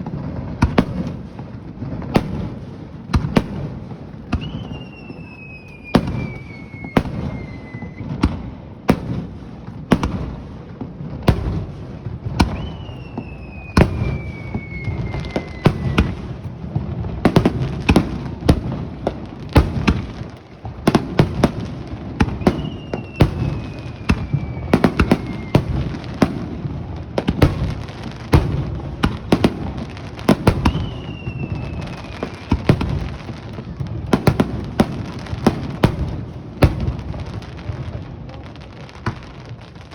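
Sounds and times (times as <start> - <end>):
fireworks bangs and booms: 0.0 - 39.9
descending firework whistle: 3.3 - 9.2, 11.3 - 16.5, 20.9 - 37.8.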